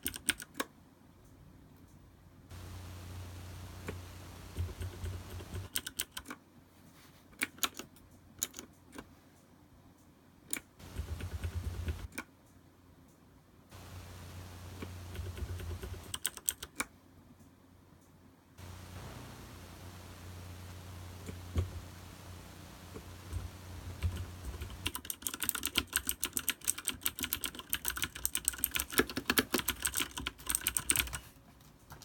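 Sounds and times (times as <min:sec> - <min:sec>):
mechanical keyboard typing clicks: 0:00.0 - 0:01.4, 0:03.8 - 0:06.4, 0:07.4 - 0:09.1, 0:10.5 - 0:13.2, 0:14.7 - 0:16.9, 0:22.9 - 0:31.2.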